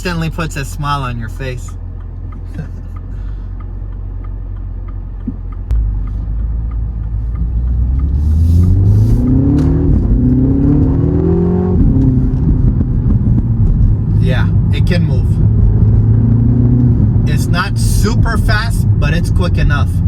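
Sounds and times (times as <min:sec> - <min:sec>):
car engine accelerating hard: 0:00.0 - 0:20.0.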